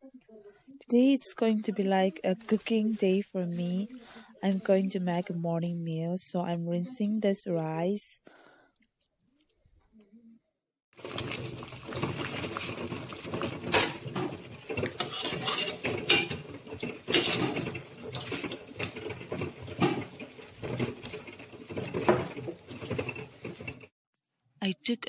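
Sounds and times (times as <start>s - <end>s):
pot clinking: 11.0s - 23.8s.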